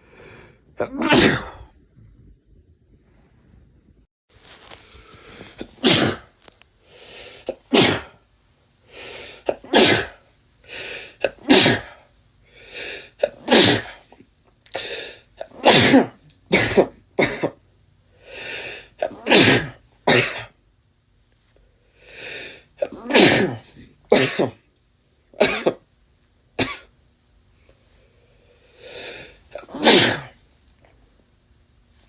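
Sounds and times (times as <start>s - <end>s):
man sneezing: 0.8s - 1.7s, 5.6s - 6.3s, 7.5s - 8.2s, 9.4s - 10.2s, 11.2s - 12.0s, 13.2s - 14.0s, 14.8s - 17.5s, 18.8s - 20.5s, 22.8s - 24.6s, 29.0s - 30.4s.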